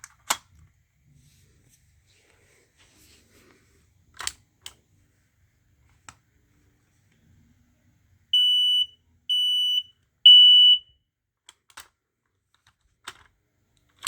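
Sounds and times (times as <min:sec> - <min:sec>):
smoke alarm beeps: 0:08.4 - 0:10.9.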